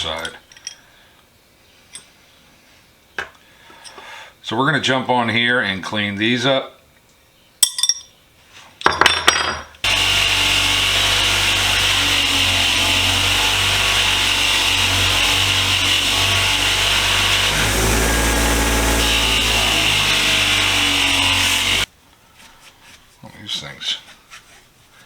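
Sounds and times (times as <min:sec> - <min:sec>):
wire wheel scrubbing metal: 0:09.9 - 0:21.9.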